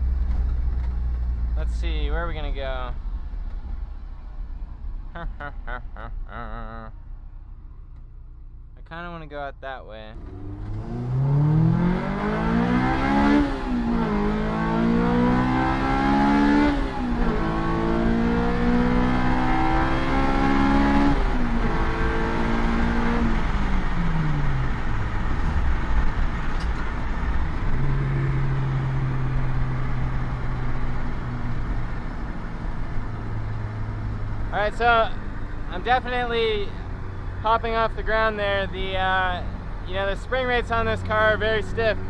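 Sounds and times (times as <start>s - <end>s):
car engine revving through gears: 10.1s - 34.5s.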